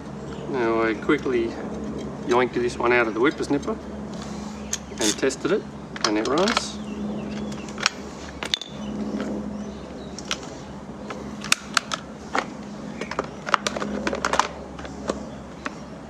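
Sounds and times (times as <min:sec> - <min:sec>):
tools clicking and tapping: 0:06.0 - 0:08.8.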